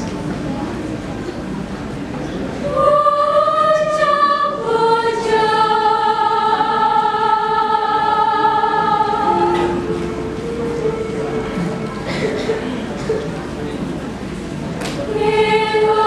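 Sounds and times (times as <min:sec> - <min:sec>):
choir singing sustained chords: 0:02.6 - 0:13.0, 0:15.1 - 0:16.0.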